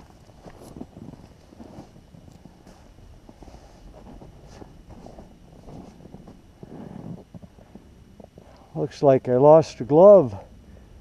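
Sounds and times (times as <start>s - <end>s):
crunching in packed snow: 0.0s - 7.9s.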